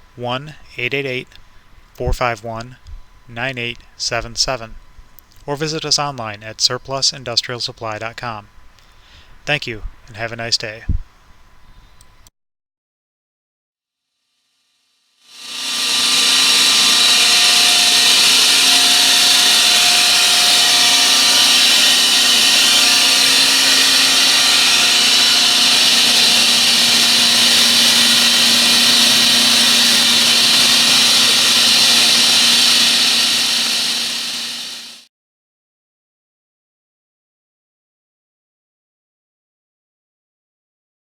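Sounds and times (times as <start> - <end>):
air compressor humming and hissing: 15.4 - 35.0.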